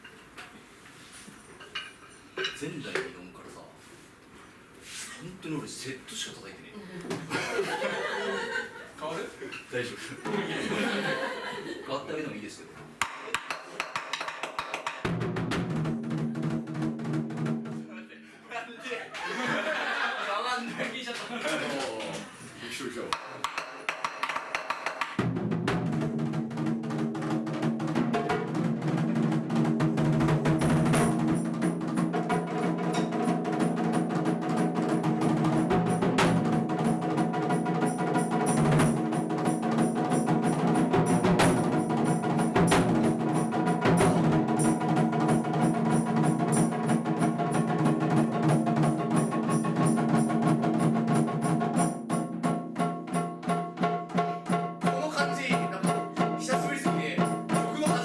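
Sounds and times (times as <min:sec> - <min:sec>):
taiko drums playing fast rhythm: 0:13.0 - 0:17.9, 0:23.1 - 0:58.0.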